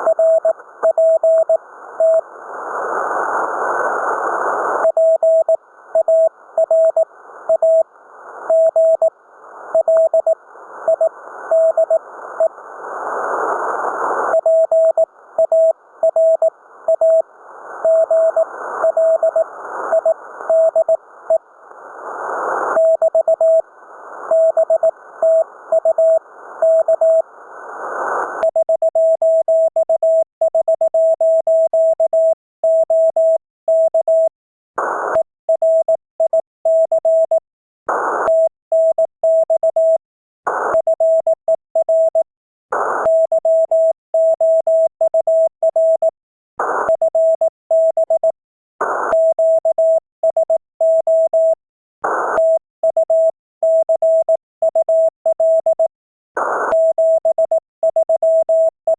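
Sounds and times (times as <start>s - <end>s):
radio band hiss: 2.4s - 4.8s, 21.2s - 22.8s
morse code tone: 56.7s - 58.8s.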